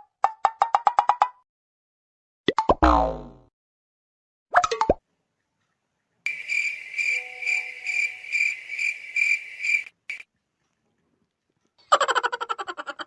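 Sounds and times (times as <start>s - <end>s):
cricket chirping: 6.3s - 10.3s.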